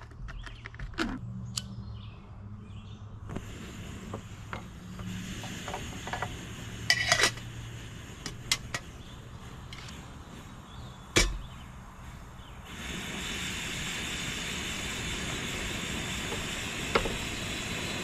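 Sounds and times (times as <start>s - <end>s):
metal cookware clicks and clanks: 6.9s - 7.4s, 11.2s - 11.4s.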